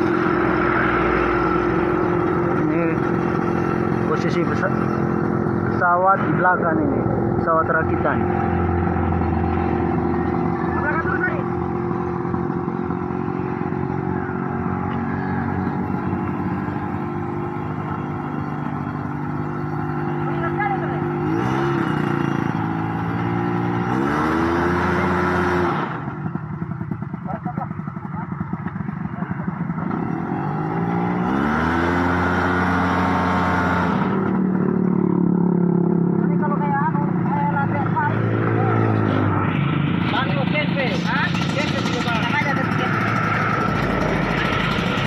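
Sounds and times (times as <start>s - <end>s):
aircraft engine running: 0.0s - 45.0s
light aircraft engine running: 24.7s - 45.0s.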